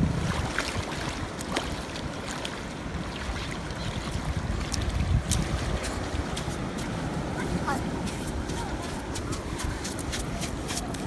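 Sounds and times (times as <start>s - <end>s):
wind on microphone: 0.0s - 2.3s, 2.9s - 11.0s
surf washing on beach: 0.0s - 11.0s.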